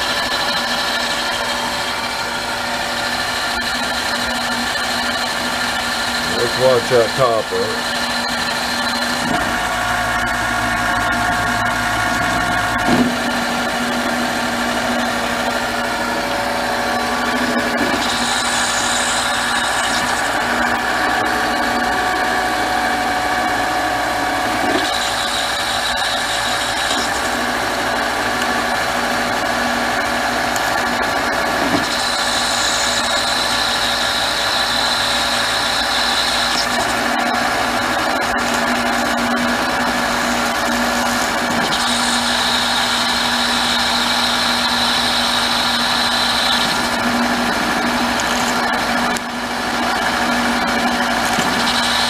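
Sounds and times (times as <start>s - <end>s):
metal lathe whine: 0.0s - 52.0s
hiss of cutting: 18.0s - 20.2s, 31.9s - 36.8s.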